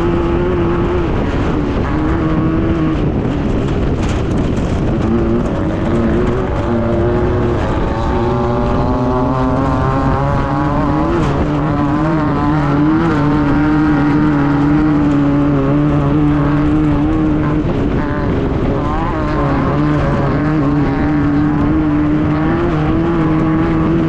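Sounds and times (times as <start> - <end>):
buggy engine revving high: 0.0 - 24.0.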